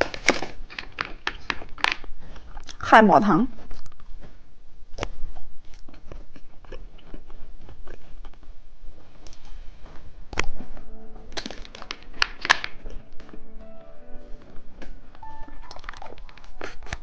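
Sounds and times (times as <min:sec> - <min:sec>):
crunchy candy chewing: 0:00.0 - 0:02.8, 0:03.5 - 0:10.7, 0:11.3 - 0:13.1, 0:15.6 - 0:17.0.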